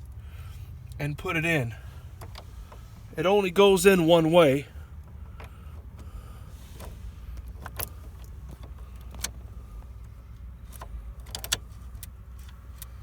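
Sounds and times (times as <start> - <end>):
small metallic clicks: 10.6 - 13.0.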